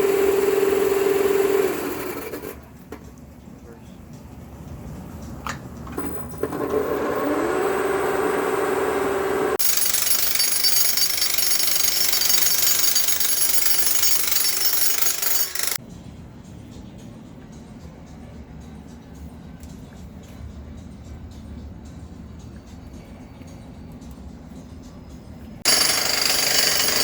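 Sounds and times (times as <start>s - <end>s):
harsh grinding on concrete: 25.7s - 27.0s.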